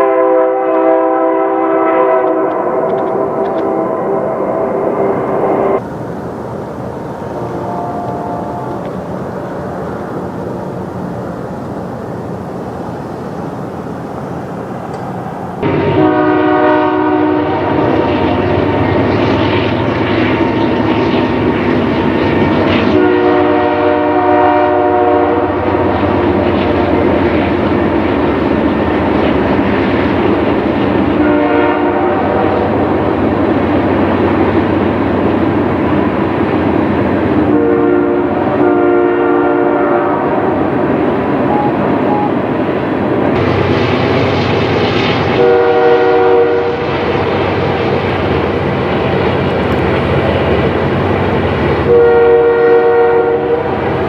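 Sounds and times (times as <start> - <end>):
locomotive air horn chord: 0.0 - 4.9, 7.4 - 8.9, 15.6 - 18.0, 23.0 - 25.9, 31.2 - 32.5, 37.5 - 40.5, 45.4 - 46.8, 51.9 - 53.7
passing train rumble: 0.0 - 54.0.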